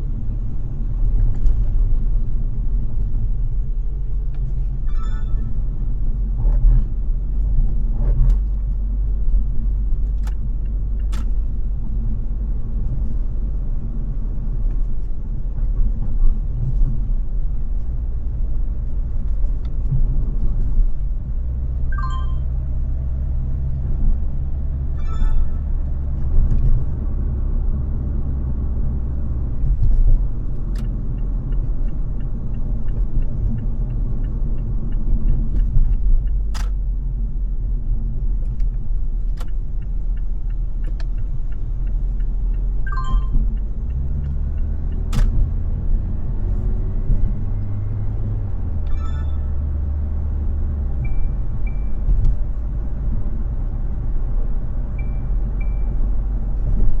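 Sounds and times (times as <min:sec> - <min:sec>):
car engine and road rumble: 0:00.0 - 0:57.0
short high chirps: 0:04.9 - 0:05.6, 0:21.9 - 0:22.5, 0:25.0 - 0:25.7.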